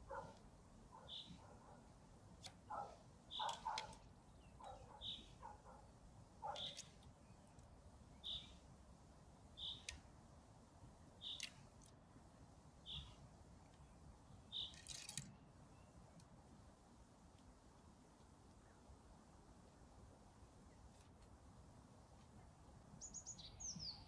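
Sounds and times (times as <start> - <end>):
bird calling high note: 0.9 - 1.8, 2.7 - 5.8, 9.6 - 10.0
faint clicks: 9.6 - 10.1, 11.2 - 12.0.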